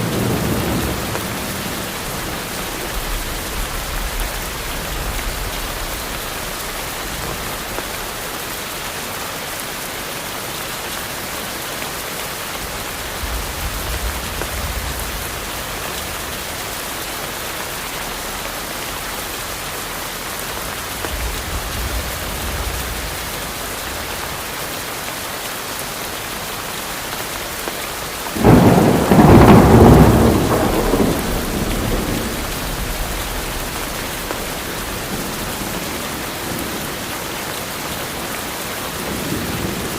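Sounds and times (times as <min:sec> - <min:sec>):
heavy rain falling: 0:00.0 - 0:39.9
distant thunder rumbling: 0:12.6 - 0:16.9, 0:20.6 - 0:24.5, 0:28.3 - 0:37.1
loud thunderclap: 0:28.4 - 0:36.6.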